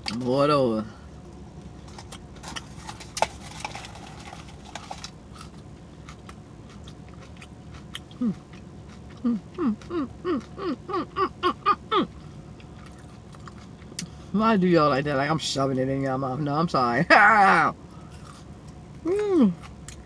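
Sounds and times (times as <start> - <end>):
wet chewing and lip-smacking: 4.8 - 10.9, 12.6 - 14.1.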